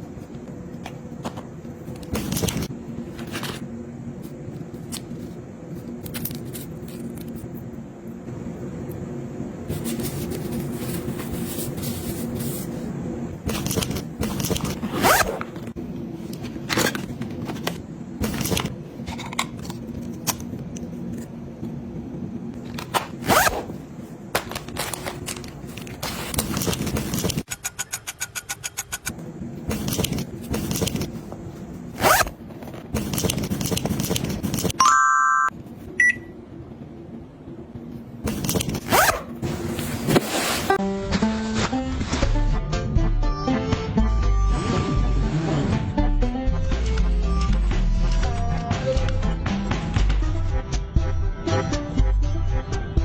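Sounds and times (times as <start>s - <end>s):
items being handled: 0.1s - 7.6s, 9.7s - 21.7s, 22.6s - 34.8s
zippers being pulled: 13.5s - 15.6s, 23.2s - 23.7s, 32.0s - 34.7s, 38.3s - 39.3s.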